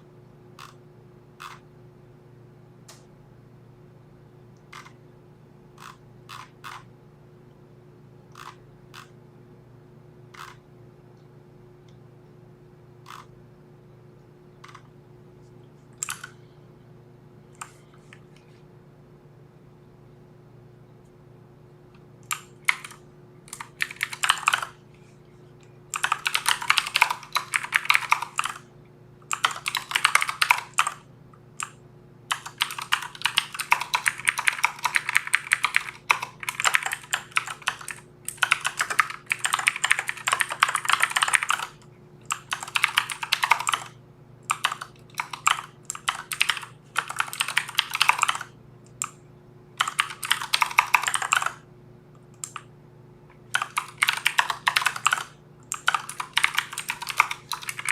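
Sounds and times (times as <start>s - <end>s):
faint low hum: 0.0s - 57.9s
typing on keyboard: 1.4s - 1.6s, 4.7s - 5.0s, 5.8s - 6.9s, 8.4s - 9.1s, 10.4s - 10.6s, 13.1s - 13.3s, 14.6s - 14.8s, 16.0s - 16.4s, 22.2s - 24.8s, 25.9s - 28.7s, 29.3s - 49.2s, 49.8s - 51.6s, 52.3s - 52.7s, 53.5s - 57.9s.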